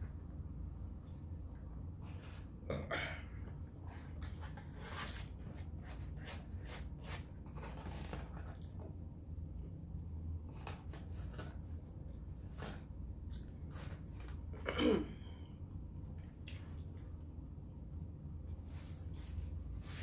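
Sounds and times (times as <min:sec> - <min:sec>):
chewing and mouth sounds: 0:16.2 - 0:17.3.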